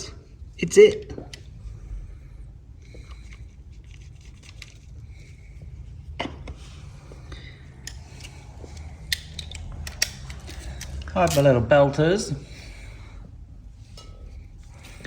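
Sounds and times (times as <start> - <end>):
steady low hum: 0.0 - 15.0
hand tools clicking and clinking: 7.8 - 11.6.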